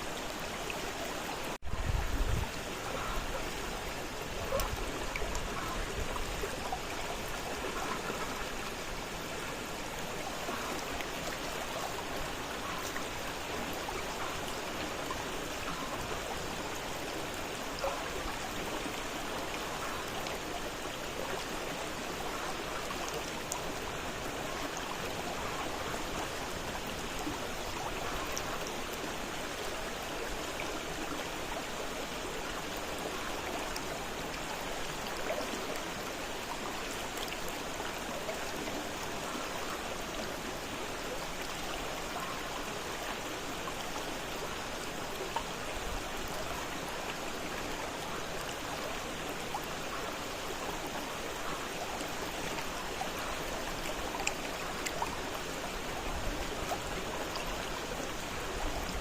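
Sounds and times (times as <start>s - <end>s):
river water rushing: 0.0s - 59.0s.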